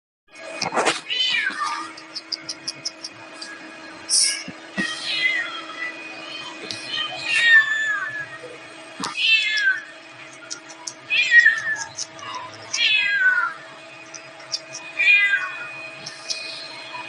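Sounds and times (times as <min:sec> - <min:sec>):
cat meowing: 0:06.9 - 0:08.2, 0:09.1 - 0:09.9, 0:11.1 - 0:13.6, 0:15.0 - 0:15.8.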